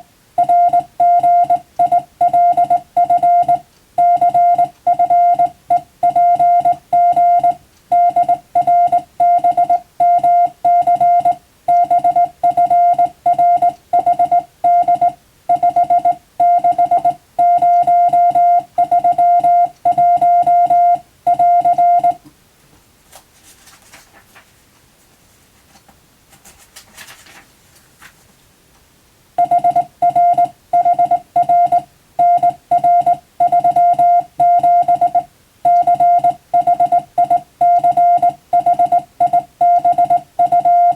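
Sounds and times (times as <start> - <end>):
morse code beeps: 0.4 - 22.2, 29.4 - 40.9
faint rustling: 22.7 - 28.5.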